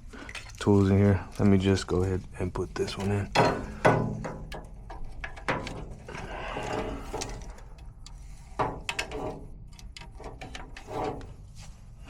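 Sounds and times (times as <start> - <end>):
hand tools clicking and rattling: 2.7 - 11.5.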